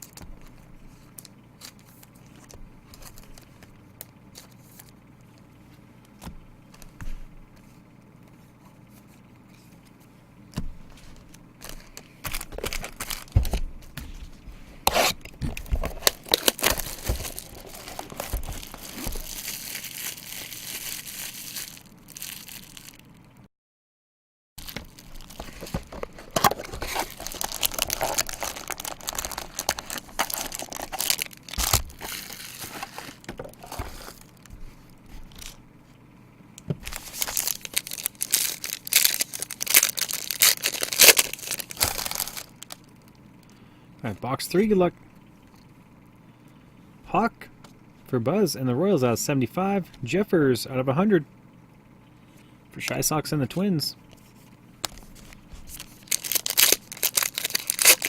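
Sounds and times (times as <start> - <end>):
plastic packaging ripping: 0.0 - 0.2, 11.6 - 13.6, 14.8 - 23.0, 24.6 - 34.6, 35.3 - 35.6, 36.8 - 42.9, 54.8 - 58.0.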